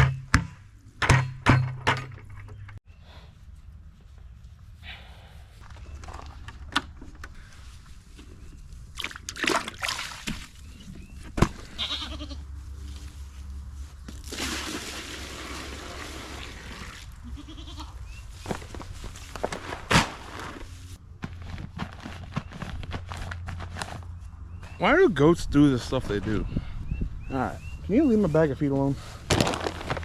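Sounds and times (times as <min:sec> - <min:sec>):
goats bleating: 0:11.7 - 0:12.4, 0:17.2 - 0:18.0.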